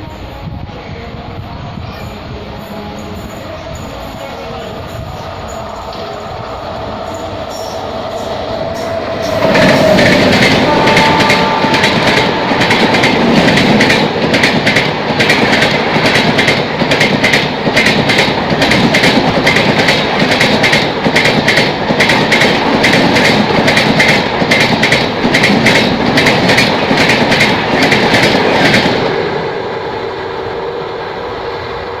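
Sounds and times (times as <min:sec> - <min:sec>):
train rushing past: 0:00.0 - 0:32.0
wheels clacking over rail joints: 0:08.6 - 0:29.0
train horn: 0:08.8 - 0:13.7.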